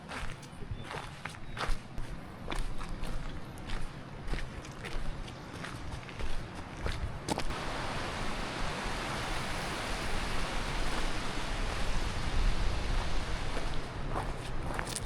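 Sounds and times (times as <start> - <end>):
footsteps: 0.0 - 7.5, 12.9 - 15.0
rushing stream: 3.7 - 15.0.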